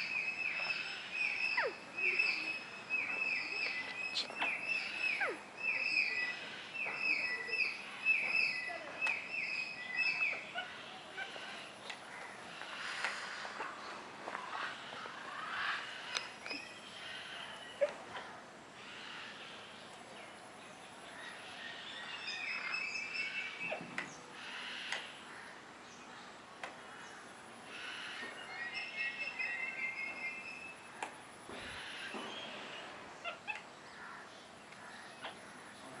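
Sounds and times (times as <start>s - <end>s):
birds chirping: 0.0s - 36.0s.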